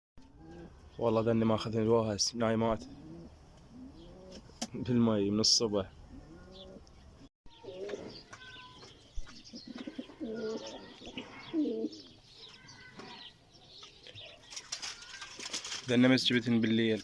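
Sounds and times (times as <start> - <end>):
pigeons cooing: 0.2 - 0.9, 2.7 - 4.7, 6.0 - 6.9, 7.5 - 8.3, 9.4 - 15.5.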